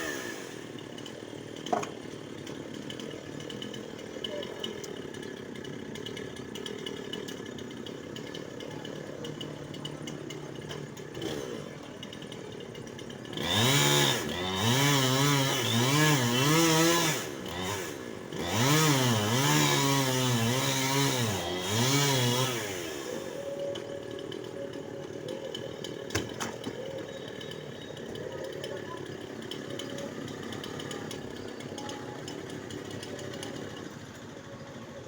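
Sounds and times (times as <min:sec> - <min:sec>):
chainsaw cutting wood: 0:00.0 - 0:34.0.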